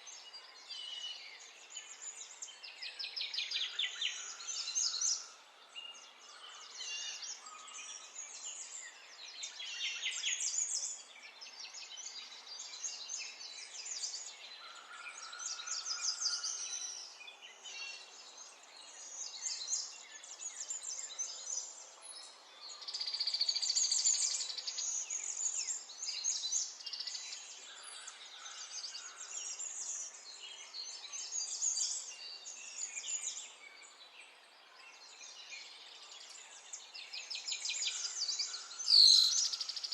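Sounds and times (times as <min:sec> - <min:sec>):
birds chirping and singing: 0:34.8 - 0:39.9.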